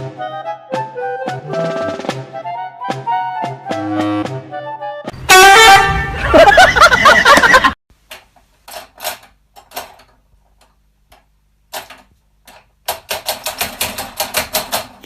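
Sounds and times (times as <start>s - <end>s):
loud music: 0.0s - 6.4s.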